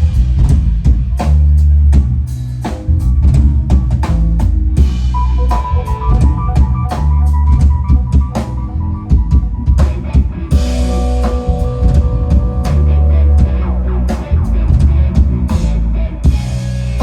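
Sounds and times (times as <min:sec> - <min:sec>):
drum kit steady beat: 0:00.0 - 0:17.0
electric bass: 0:00.0 - 0:17.0
electric guitar: 0:04.7 - 0:17.0.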